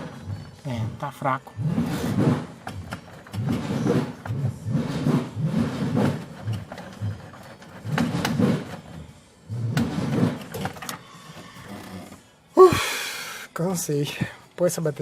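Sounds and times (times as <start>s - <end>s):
starter motor cranking slowly: 1.6s - 12.2s.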